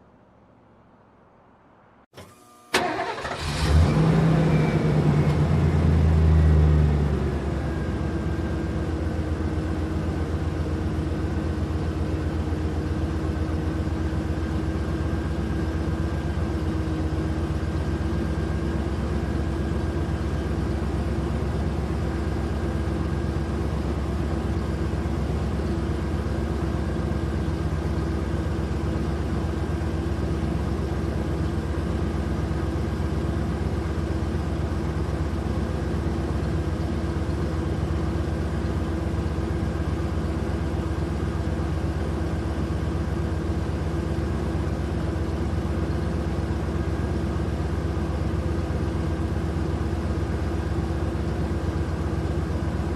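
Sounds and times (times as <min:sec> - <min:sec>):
ignition click: 0:02.2 - 0:03.8
engine starting and idling: 0:02.2 - 0:06.4.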